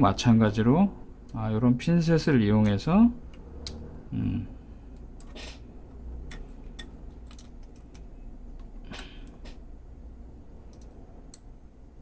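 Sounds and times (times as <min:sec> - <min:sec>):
metal tweezers clicking and tapping: 0:06.2 - 0:08.7.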